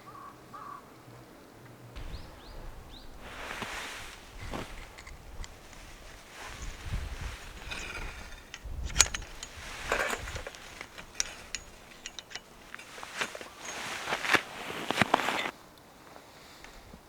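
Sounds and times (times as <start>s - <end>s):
camping gear being handled: 2.0s - 15.6s.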